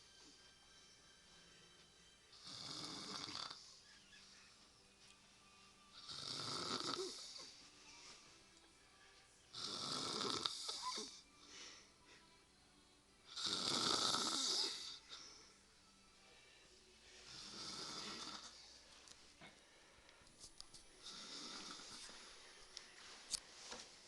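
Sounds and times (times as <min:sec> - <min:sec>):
woman snoring: 0:02.4 - 0:03.6, 0:06.0 - 0:07.6, 0:09.5 - 0:11.2, 0:13.3 - 0:15.2, 0:17.3 - 0:18.6, 0:21.0 - 0:22.1.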